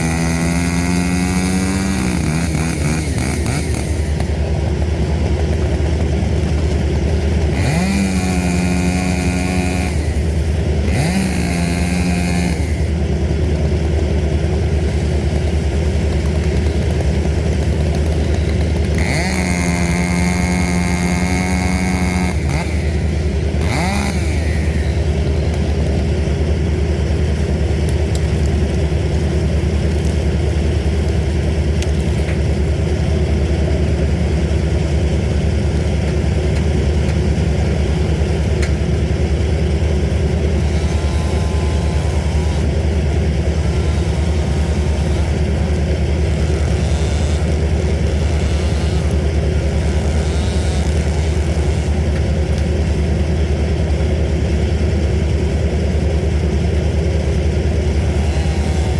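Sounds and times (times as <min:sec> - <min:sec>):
chainsaw revving: 0:00.0 - 0:58.9
heavy engine drone: 0:00.0 - 0:58.9.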